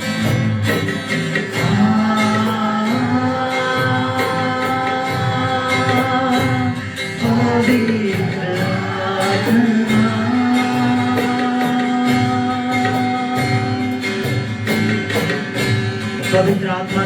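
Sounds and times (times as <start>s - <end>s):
worship band playing: 0.0s - 17.0s
person singing long notes: 1.1s - 14.5s.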